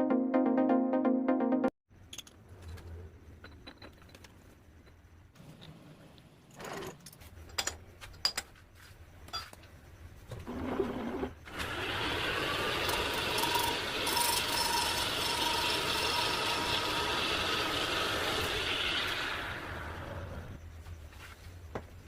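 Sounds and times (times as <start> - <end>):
metal lathe whirring: 11.5 - 20.5.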